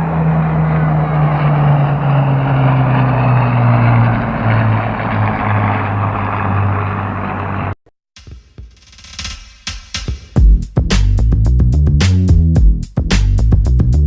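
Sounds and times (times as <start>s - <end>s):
propeller aircraft flying past: 0.0s - 7.8s.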